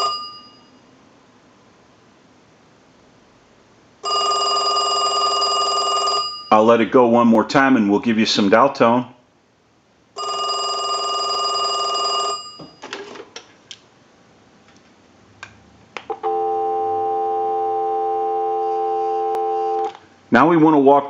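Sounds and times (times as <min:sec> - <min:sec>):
telephone ringing: 0:00.0 - 0:00.8, 0:04.0 - 0:06.6, 0:10.2 - 0:13.0, 0:16.2 - 0:20.0
dial tone: 0:10.2 - 0:12.6, 0:16.2 - 0:19.9
phone line clicks: 0:18.6 - 0:20.0.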